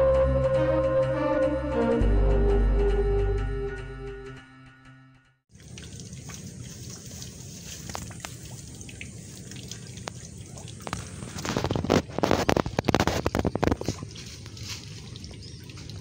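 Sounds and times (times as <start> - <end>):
intro music: 0.0 - 5.3
outdoor background noise: 5.5 - 16.0
small ticks and drips: 5.5 - 16.0.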